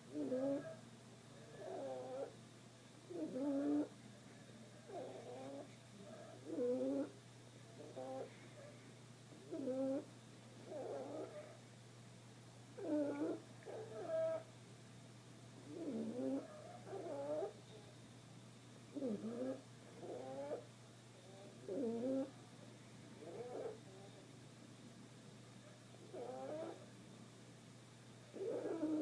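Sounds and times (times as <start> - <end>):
dog snoring: 0.1 - 0.8, 1.6 - 2.3, 3.1 - 3.9, 4.9 - 5.7, 6.4 - 7.1, 7.8 - 8.3, 9.4 - 11.5, 12.8 - 14.4, 15.6 - 17.6, 18.9 - 20.6, 21.6 - 22.3, 23.2 - 24.1, 26.0 - 26.8, 28.3 - 29.0.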